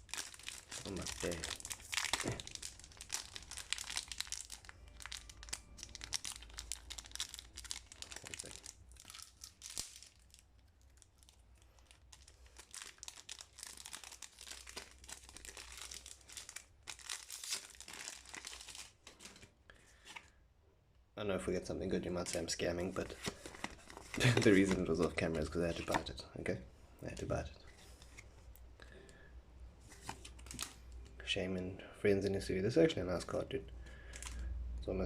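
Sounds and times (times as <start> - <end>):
foil wrapper crinkling and tearing: 0.0 - 19.3.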